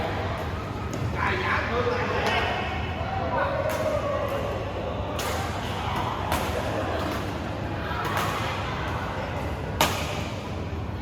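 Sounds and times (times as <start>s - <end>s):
murmur of voices in a hall: 0.0s - 11.0s
racket striking shuttlecock: 9.8s - 10.3s.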